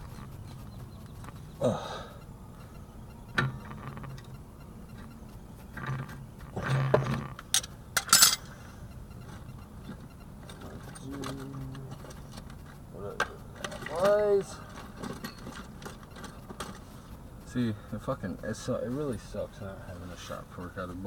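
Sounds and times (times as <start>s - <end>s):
low steady hum: 0.0s - 21.0s
metal tools clanking: 6.6s - 8.6s, 9.2s - 17.0s.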